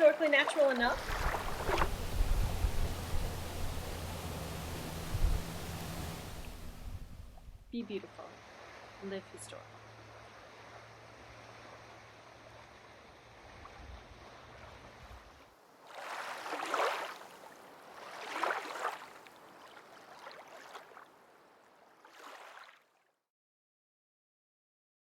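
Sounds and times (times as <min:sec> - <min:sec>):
outdoor hiss: 0:00.0 - 0:10.5
water splashing: 0:00.0 - 0:23.0
low hum: 0:00.8 - 0:13.8.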